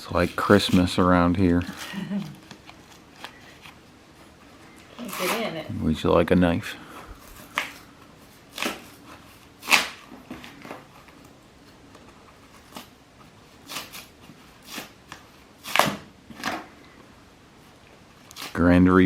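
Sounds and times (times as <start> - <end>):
packing rustling and scraping: 6.9 - 16.7
cardboard box being cut open: 15.6 - 16.1.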